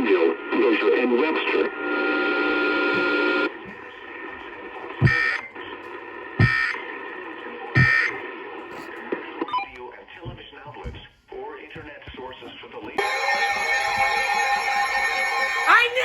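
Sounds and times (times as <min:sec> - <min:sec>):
broadcast audio: 0:02.6 - 0:16.0.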